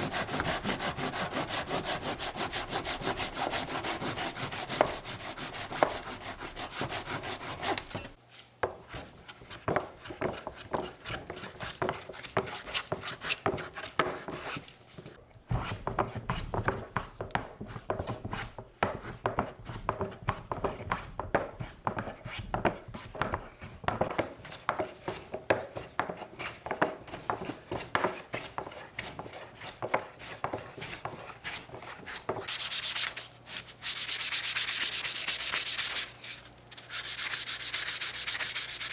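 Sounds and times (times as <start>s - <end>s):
hand tool rubbing on wood: 0.0s - 8.2s, 33.8s - 38.9s.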